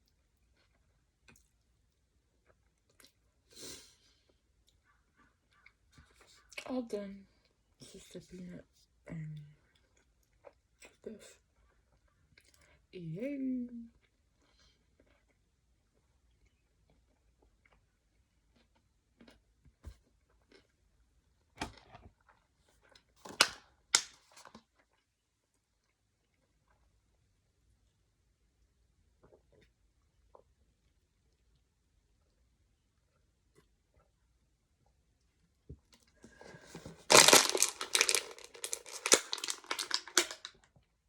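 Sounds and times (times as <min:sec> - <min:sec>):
crinkling crushing crackles: 0:36.1 - 0:40.7
clicks of things handled: 0:36.5 - 0:40.5.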